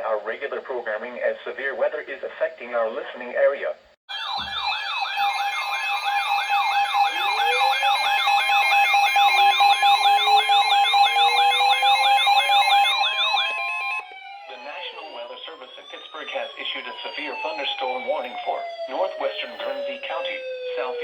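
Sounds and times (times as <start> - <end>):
tone gliding upward: 4.1 - 20.7
rapid rising siren yelp: 4.1 - 21.0
steady alarm tones: 4.1 - 21.0.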